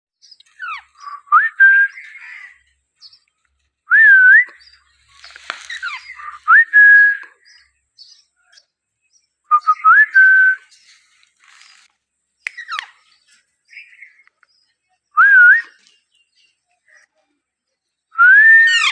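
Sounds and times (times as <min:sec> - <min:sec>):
soft bird chirps: 0:00.2 - 0:18.9
rustling: 0:05.0 - 0:06.4, 0:10.7 - 0:12.0.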